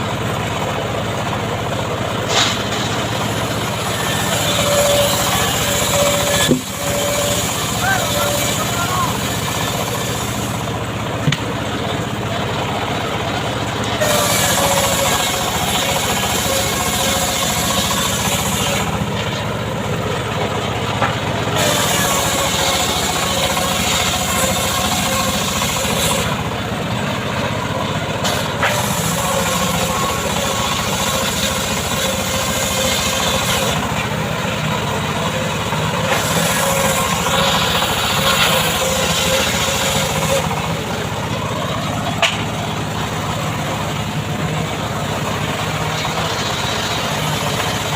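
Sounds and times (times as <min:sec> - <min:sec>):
chainsaw cutting wood: 0:02.5 - 0:11.7, 0:13.9 - 0:19.6, 0:21.0 - 0:26.6, 0:28.2 - 0:34.4, 0:35.3 - 0:41.3, 0:45.9 - 0:47.9.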